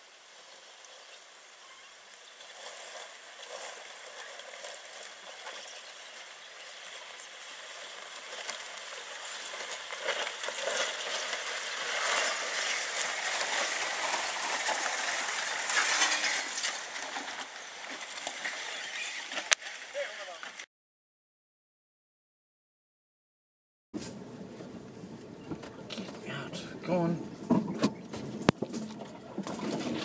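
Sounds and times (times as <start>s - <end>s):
branches scratching car body: 2.2s - 20.6s.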